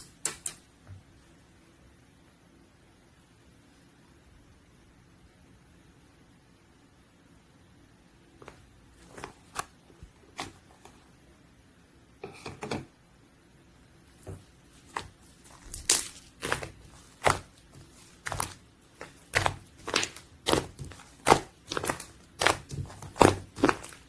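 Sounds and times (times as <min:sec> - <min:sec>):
sticky slime pops and crackles: 0:14.2 - 0:24.0.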